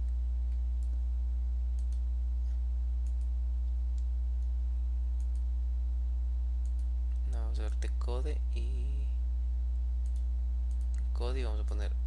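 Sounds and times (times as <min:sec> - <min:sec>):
low electrical hum with tones: 0:00.0 - 0:12.0
computer mouse clicks: 0:01.8 - 0:02.0, 0:03.0 - 0:04.1, 0:05.2 - 0:05.5, 0:06.6 - 0:07.2, 0:10.0 - 0:11.1.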